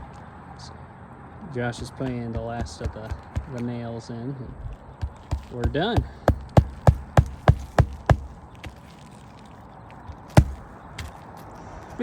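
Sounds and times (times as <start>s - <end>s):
hammer driving nails into shingles: 2.0s - 3.7s, 5.0s - 8.8s, 10.3s - 10.7s.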